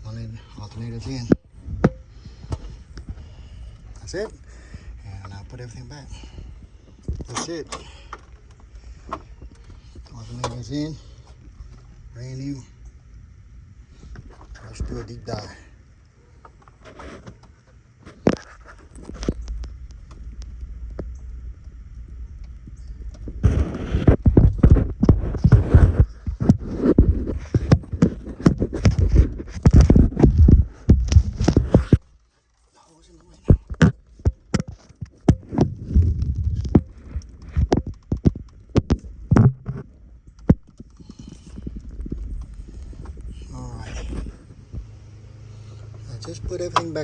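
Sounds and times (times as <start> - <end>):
thumps and rustling: 16.4 - 21.1, 22.6 - 45.0
low rumbling: 18.6 - 32.2, 33.5 - 47.0.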